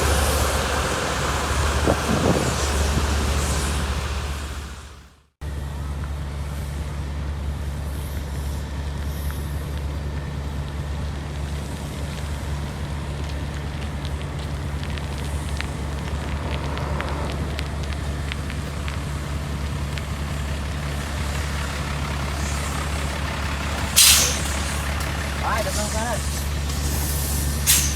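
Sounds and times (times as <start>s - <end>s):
diesel engine droning: 0.0s - 27.9s.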